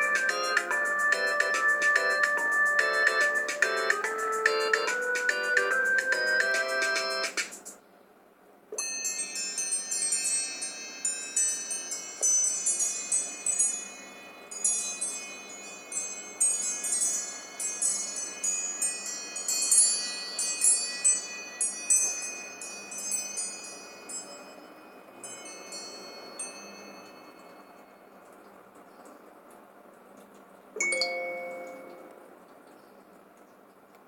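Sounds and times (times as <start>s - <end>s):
wind chime ringtone tinkling: 8.8s - 28.2s, 30.8s - 32.2s.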